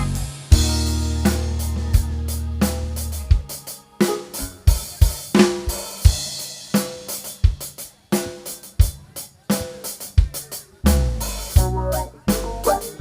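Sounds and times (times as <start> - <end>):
drum kit playing: 0.0 - 13.0.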